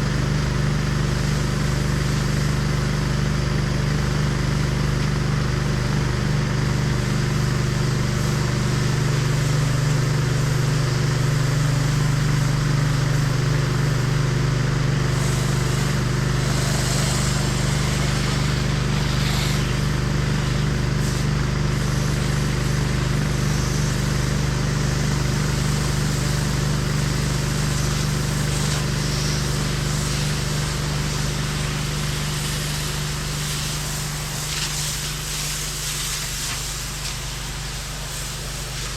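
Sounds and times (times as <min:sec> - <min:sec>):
high-pressure water spray hiss: 0:00.0 - 0:03.2, 0:05.8 - 0:38.9
pressure washer engine running: 0:00.0 - 0:38.9.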